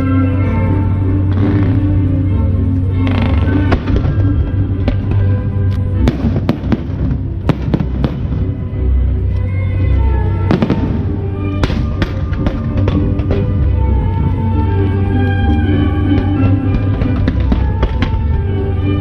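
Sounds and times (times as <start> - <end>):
music playing: 0.0 - 19.0
fireworks bangs and crackles: 3.0 - 8.7, 10.5 - 14.3, 15.9 - 19.0.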